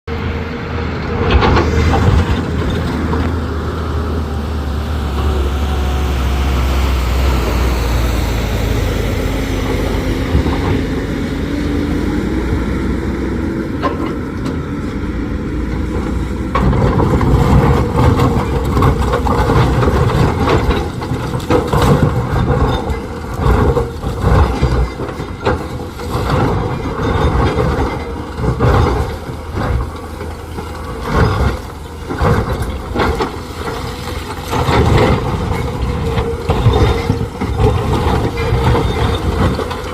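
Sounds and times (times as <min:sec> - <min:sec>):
excavator diesel engine: 0:00.0 - 0:39.9
broken rock clattering: 0:16.4 - 0:39.9.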